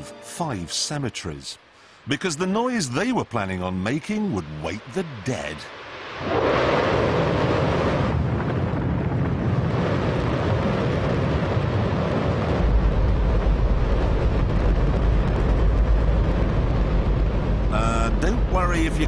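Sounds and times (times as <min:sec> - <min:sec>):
rocket engine roaring: 0:03.8 - 0:19.0.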